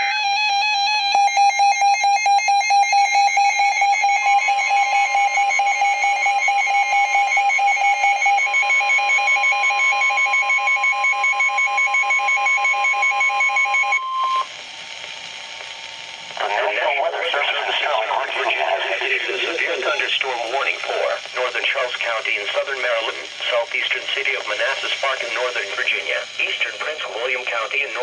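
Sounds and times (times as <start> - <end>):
rapidly pulsing alarm tone: 0.0 - 14.4.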